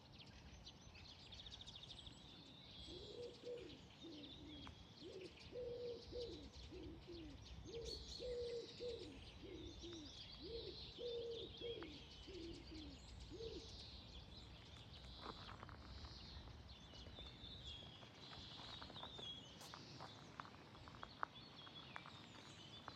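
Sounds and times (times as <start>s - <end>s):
songbirds chirping: 0.0s - 22.9s
pigeon cooing: 2.9s - 13.7s.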